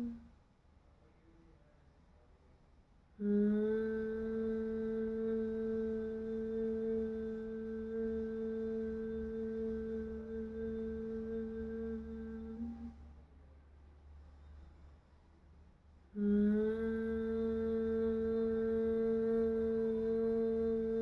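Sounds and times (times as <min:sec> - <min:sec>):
person humming: 0:00.0 - 0:00.3, 0:03.2 - 0:13.2, 0:16.2 - 0:21.0.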